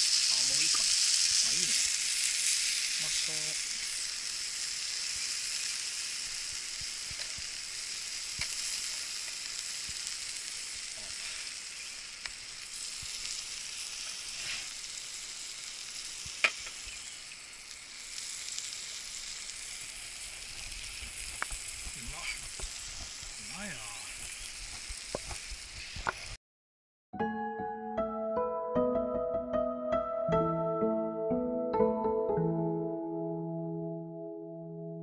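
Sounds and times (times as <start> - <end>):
fire crackles and pop: 0.0 - 26.4
meat sizzling on a grill: 0.0 - 26.4.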